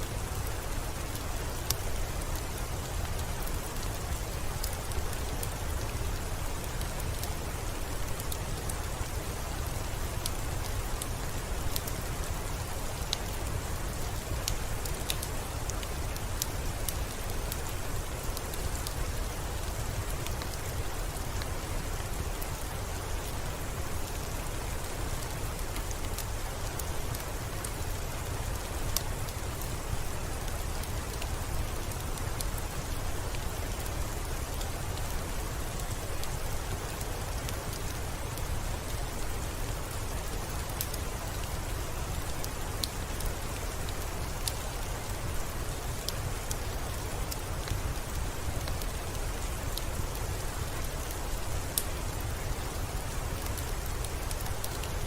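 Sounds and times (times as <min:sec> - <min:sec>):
steady rain: 0:00.0 - 0:55.0
fireplace crackling: 0:25.5 - 0:55.0.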